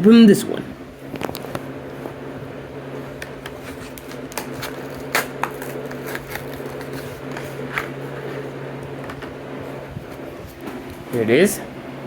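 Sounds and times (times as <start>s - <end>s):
plastic packaging torn open: 3.4s - 8.3s.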